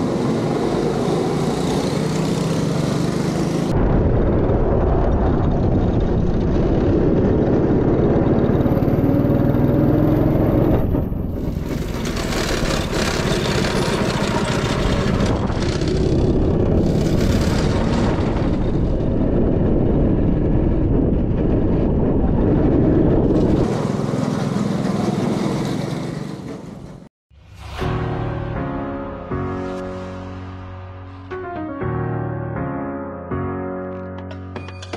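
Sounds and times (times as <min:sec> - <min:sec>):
go-kart engines running: 0:00.0 - 0:03.7, 0:11.4 - 0:18.8, 0:23.4 - 0:26.8.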